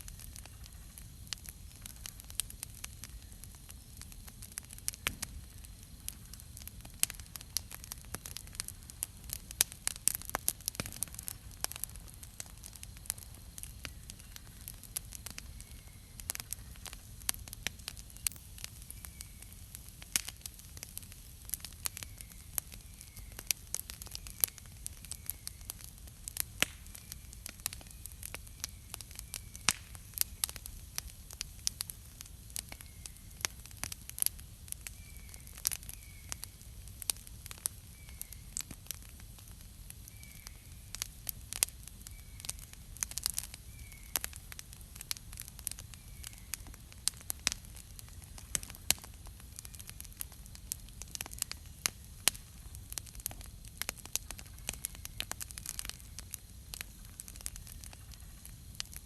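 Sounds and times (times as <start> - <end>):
campfire crackling and popping: 0.0 - 59.0
faint bird chirps: 13.8 - 16.9, 17.9 - 19.7, 21.8 - 25.8, 32.6 - 33.4, 34.8 - 36.6, 37.8 - 38.6, 40.0 - 41.0, 42.0 - 42.7, 43.4 - 44.4, 45.8 - 46.8.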